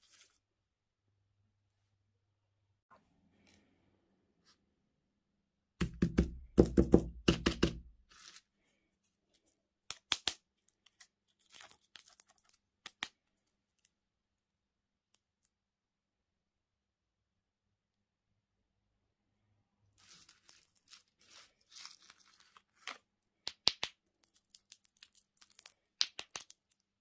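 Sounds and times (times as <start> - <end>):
packaging rustling and tearing: 10.8 - 13.0, 20.0 - 23.0.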